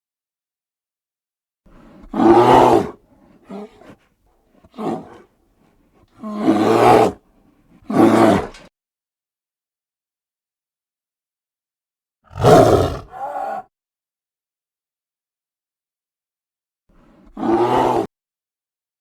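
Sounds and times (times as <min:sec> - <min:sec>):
large animal roaring: 0:02.1 - 0:03.9, 0:12.3 - 0:13.7, 0:17.4 - 0:18.1.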